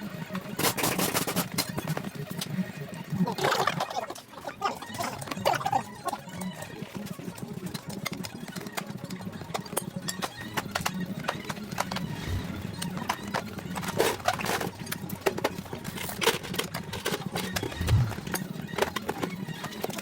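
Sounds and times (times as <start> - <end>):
low hum: 17.4 - 18.4.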